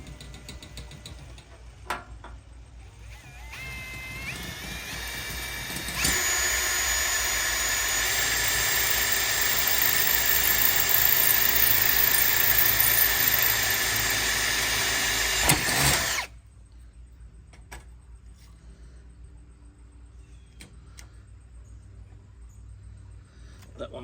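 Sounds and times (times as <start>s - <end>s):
power drill whining: 2.8s - 16.4s.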